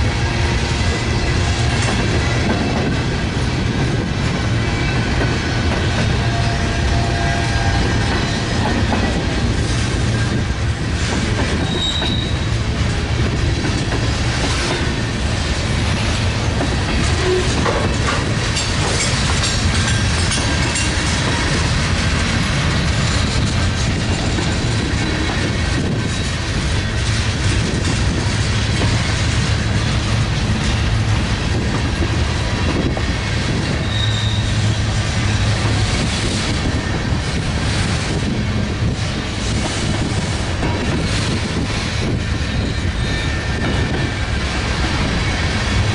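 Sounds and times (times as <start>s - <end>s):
freight train wheels rumbling: 0.0s - 45.9s
high wheel squeals: 11.6s - 12.5s, 33.7s - 35.4s, 42.3s - 44.2s.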